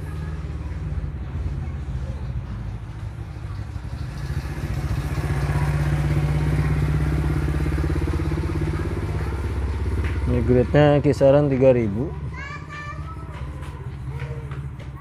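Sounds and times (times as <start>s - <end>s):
motor engine running: 0.0s - 15.0s.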